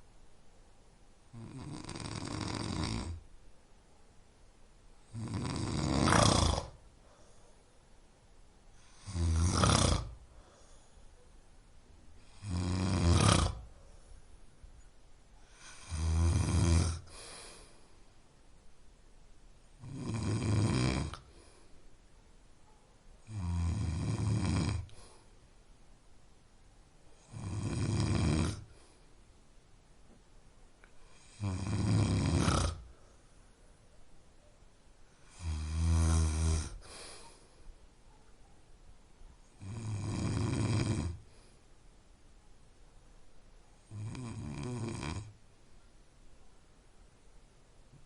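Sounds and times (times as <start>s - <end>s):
person snoring: 1.3s - 3.2s, 5.1s - 6.8s, 8.8s - 10.2s, 12.2s - 13.7s, 15.5s - 17.8s, 19.8s - 21.5s, 23.2s - 25.2s, 27.2s - 28.8s, 31.1s - 32.9s, 35.2s - 37.4s, 39.6s - 41.4s, 43.9s - 45.4s
quiet breathing: 4.9s - 18.6s, 20.9s - 23.5s, 24.1s - 25.7s, 27.0s - 29.4s, 30.8s - 38.7s, 39.3s - 42.1s.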